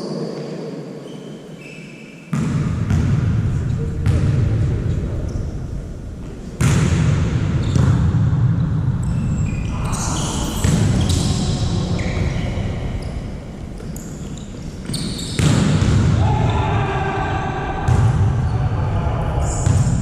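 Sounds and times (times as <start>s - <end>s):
shoe squeaks: 0.0s - 2.3s, 9.0s - 11.4s, 12.0s - 15.5s
sports hall din: 0.0s - 20.0s.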